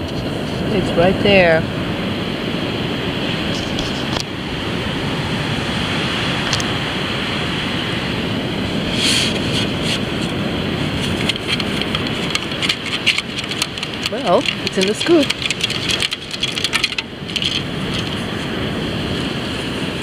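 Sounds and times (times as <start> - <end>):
ocean surf: 0.0 - 20.0
wind noise: 0.0 - 20.0
sand scoop scraping in sand: 8.8 - 15.2.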